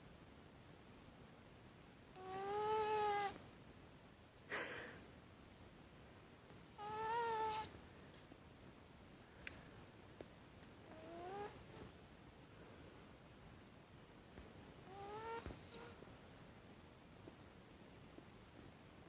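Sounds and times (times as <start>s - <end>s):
cat snoring: 10.9s - 11.9s, 14.8s - 16.0s.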